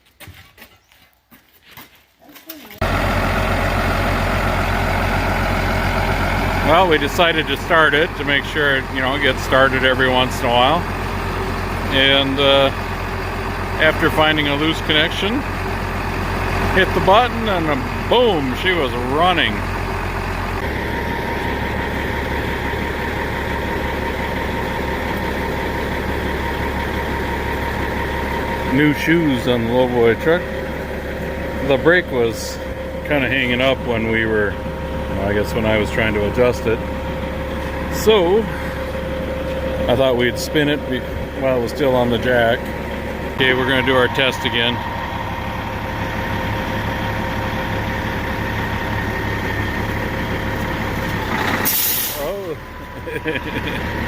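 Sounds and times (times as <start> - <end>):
engine idling: 2.8 - 54.0
thin steady whine: 31.5 - 51.1, 52.1 - 54.0.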